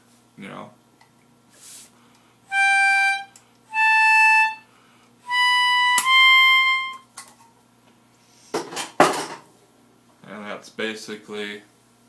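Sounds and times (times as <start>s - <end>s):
toy saxophone notes: 2.5s - 7.0s.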